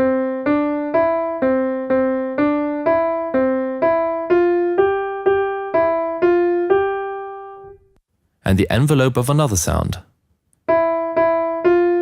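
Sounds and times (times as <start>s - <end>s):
piano-like keyboard melody: 0.0s - 8.0s, 10.6s - 12.0s.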